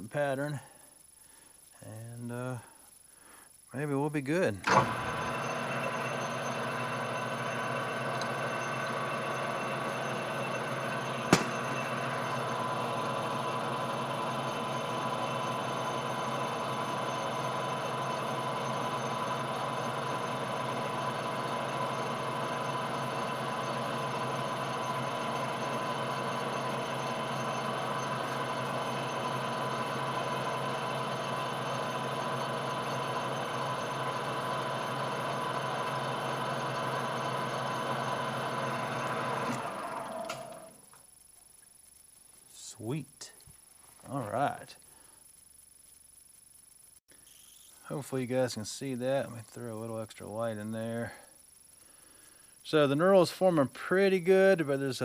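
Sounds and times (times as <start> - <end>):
metal lathe humming: 4.6 - 40.9
sharp click: 11.3 - 11.8.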